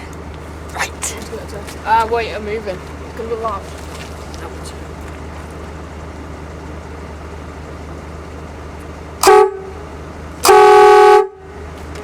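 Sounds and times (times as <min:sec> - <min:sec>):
steady low hum: 0:00.0 - 0:12.0
bus air horn blasts: 0:09.2 - 0:11.7.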